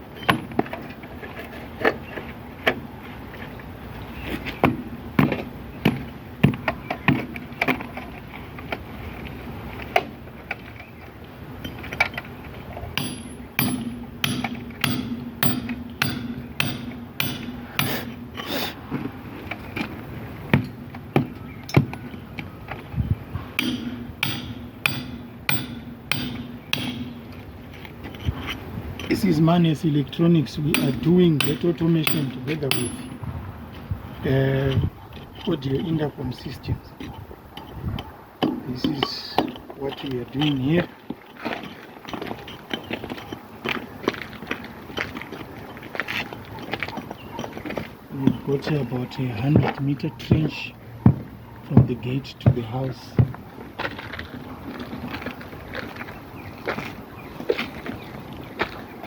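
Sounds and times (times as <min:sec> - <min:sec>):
faint steady hum: 0:00.6 - 0:35.0
hammer strikes: 0:13.0 - 0:18.5, 0:20.5 - 0:22.0, 0:23.6 - 0:27.3, 0:30.7 - 0:33.2.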